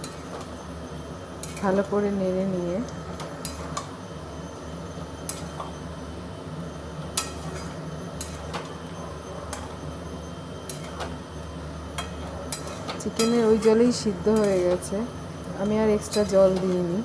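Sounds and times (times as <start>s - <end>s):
steady low hum: 0.0s - 17.0s
utensil stirring food in pot: 7.0s - 9.8s, 10.6s - 17.0s.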